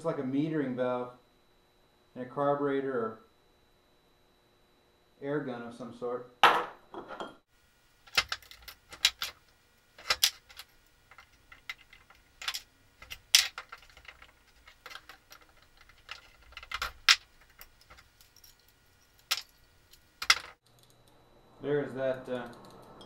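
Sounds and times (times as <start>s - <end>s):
small parts clicking and clinking: 8.0s - 21.2s.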